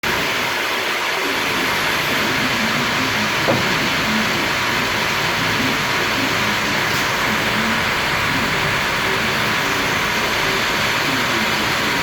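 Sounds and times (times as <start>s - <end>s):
sawmill machinery running: 0.1s - 12.0s
short knock: 3.4s - 4.0s.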